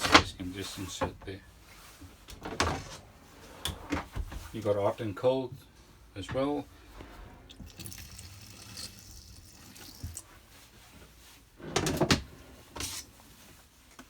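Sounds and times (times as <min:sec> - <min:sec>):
tap water running into sink: 0:07.5 - 0:10.3.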